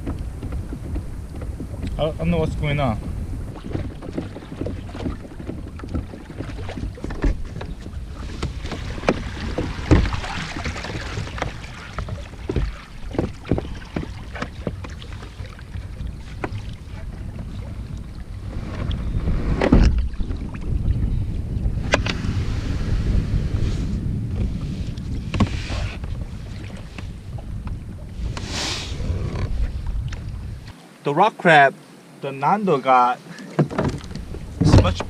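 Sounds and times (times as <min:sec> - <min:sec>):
knocks and clunks: 0:00.0 - 0:20.6, 0:33.5 - 0:35.0
wind rumbling on microphone: 0:00.0 - 0:30.8, 0:33.5 - 0:35.0.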